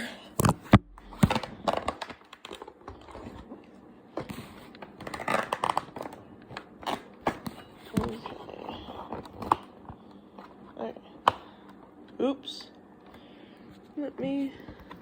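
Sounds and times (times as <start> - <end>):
packaging crinkling and tearing: 4.9 - 7.1.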